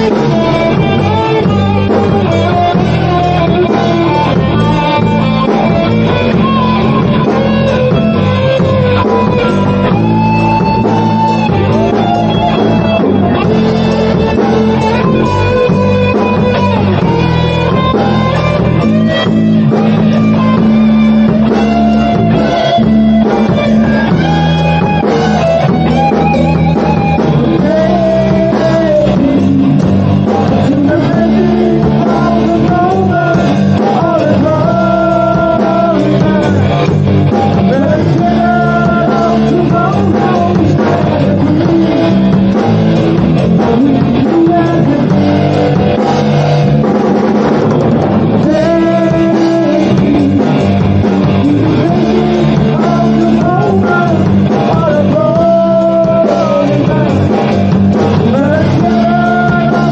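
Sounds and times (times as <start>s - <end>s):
person singing: 0.0s - 46.8s, 48.0s - 59.9s
drums: 0.0s - 59.9s
electric guitar: 0.0s - 59.9s
rock song: 0.0s - 59.9s.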